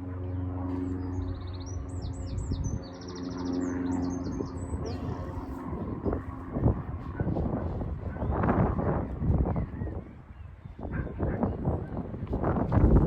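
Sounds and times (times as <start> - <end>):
low machine hum: 0.0 - 13.0
songbird singing trills: 0.9 - 5.2.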